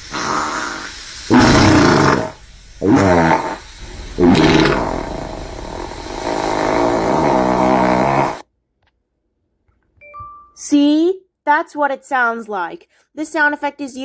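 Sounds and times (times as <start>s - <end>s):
farting sound effect: 0.0s - 8.5s.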